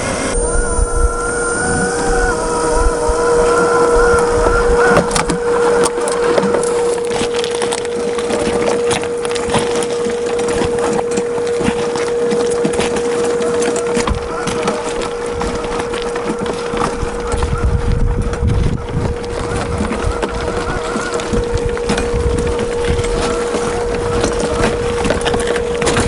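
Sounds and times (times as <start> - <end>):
rc car motor whine: 0.0 - 26.0
tyres crackling over rough ground: 0.0 - 26.0.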